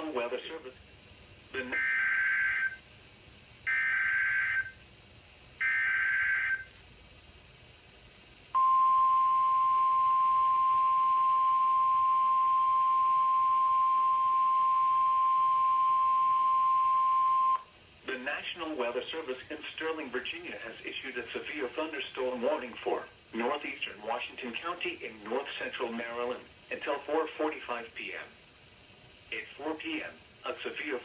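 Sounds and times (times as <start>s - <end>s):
steady warning alarm tone: 1.6s - 2.8s, 3.7s - 4.8s, 5.6s - 6.7s, 8.6s - 17.7s.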